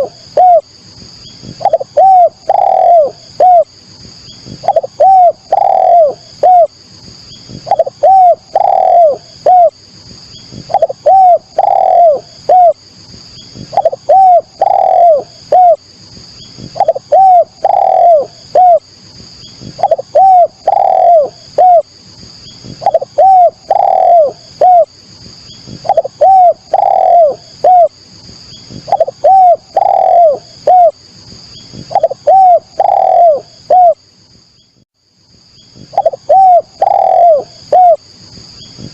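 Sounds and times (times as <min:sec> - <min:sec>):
dove cooing: 0:00.0 - 0:00.7, 0:01.4 - 0:03.7, 0:04.4 - 0:06.8, 0:07.5 - 0:09.8, 0:10.5 - 0:12.8, 0:13.5 - 0:15.8, 0:16.5 - 0:18.9, 0:19.5 - 0:21.9, 0:22.6 - 0:24.9, 0:25.7 - 0:28.0, 0:28.7 - 0:31.0, 0:31.7 - 0:34.0, 0:35.8 - 0:38.1.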